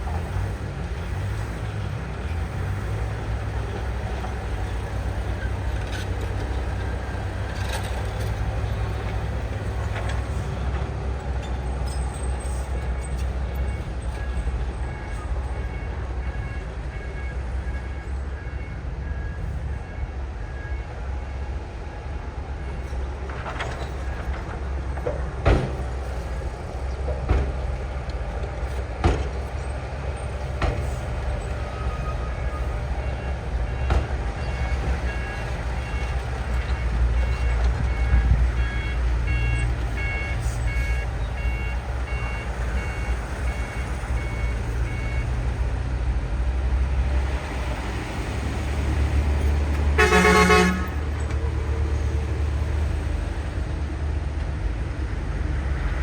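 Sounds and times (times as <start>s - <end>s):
heavy diesel engines rumbling: 0.0s - 56.0s
vehicle horn blast: 50.0s - 51.1s.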